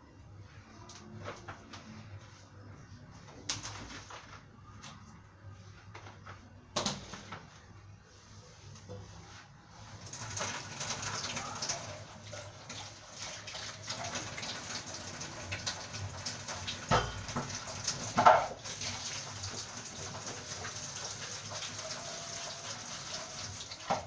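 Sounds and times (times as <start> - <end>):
tap water running into sink: 10.1 - 24.0
items knocking against sink: 16.9 - 18.6.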